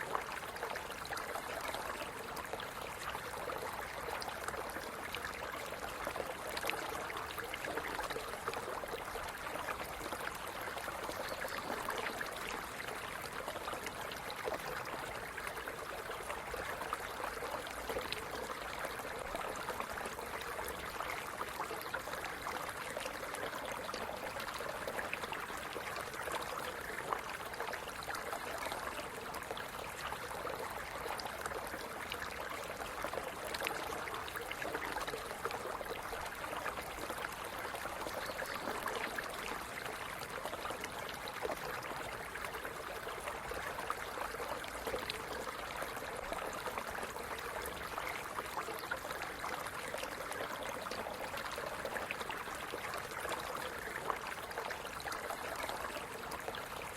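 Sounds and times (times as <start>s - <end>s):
stream trickling over stones: 0.0s - 56.9s.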